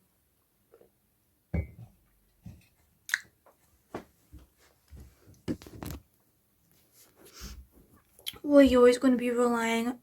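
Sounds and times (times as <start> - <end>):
objects being handled: 3.5 - 8.0.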